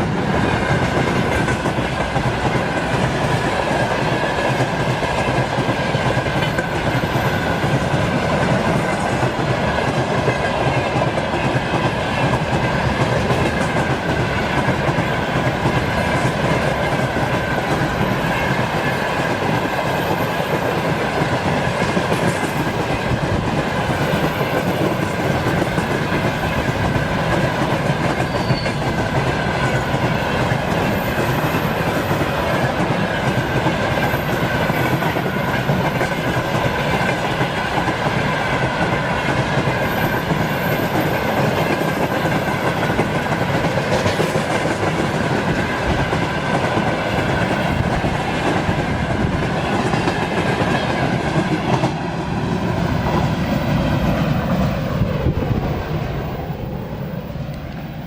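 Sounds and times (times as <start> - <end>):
train wheels clattering on rails: 0.0 - 58.0.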